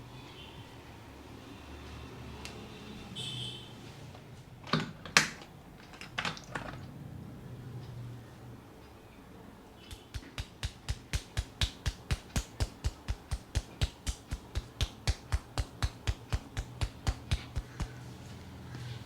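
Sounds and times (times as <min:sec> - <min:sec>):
hands slapping on a head: 0:09.9 - 0:18.2.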